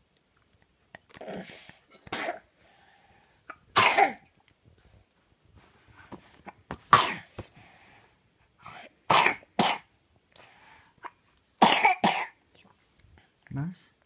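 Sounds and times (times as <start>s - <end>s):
faint breaths: 1.4s - 3.5s, 7.3s - 9.1s, 10.3s - 11.2s
young child coughing: 2.1s - 2.5s, 3.5s - 4.2s, 6.9s - 7.3s, 9.1s - 9.9s, 11.0s - 12.4s.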